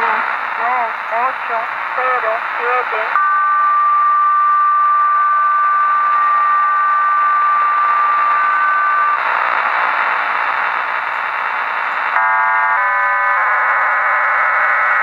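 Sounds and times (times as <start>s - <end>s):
radio hiss: 0.0s - 3.2s, 4.9s - 12.2s
steady radio tones: 0.0s - 12.2s
multi-tone digital data signal: 2.0s - 15.0s.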